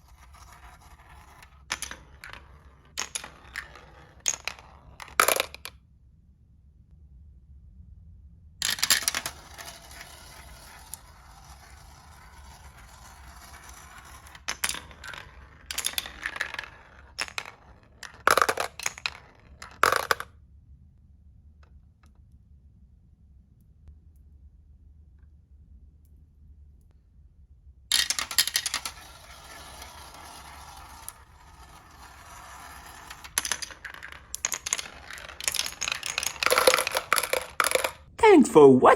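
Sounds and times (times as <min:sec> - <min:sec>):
marbles rolling down wooden run: 0:00.0 - 0:05.7, 0:08.6 - 0:20.3, 0:27.9 - 0:38.1.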